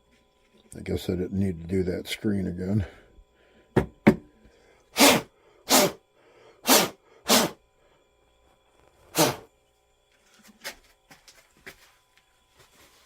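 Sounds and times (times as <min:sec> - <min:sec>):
compressed air blasts: 0:05.0 - 0:06.0, 0:06.6 - 0:07.6, 0:09.1 - 0:09.4.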